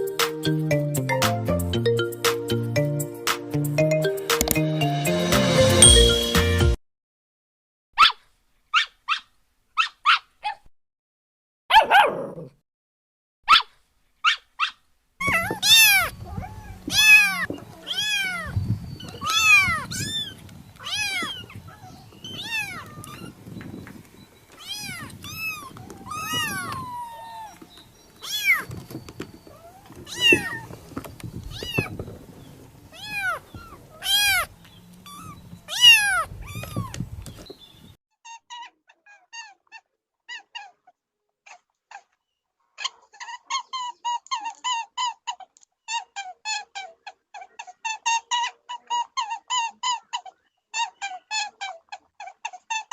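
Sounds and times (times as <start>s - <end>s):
short high notes: 4.0s - 6.8s
cat meowing: 15.2s - 23.4s, 24.6s - 27.6s, 28.2s - 28.7s, 29.5s - 30.7s, 31.5s - 31.9s, 32.9s - 37.0s.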